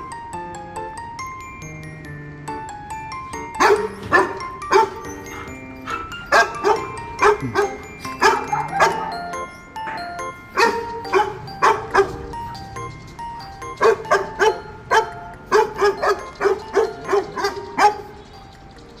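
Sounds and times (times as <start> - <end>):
light background music: 0.0 - 19.0
dog barking: 3.6 - 12.3, 13.8 - 18.1.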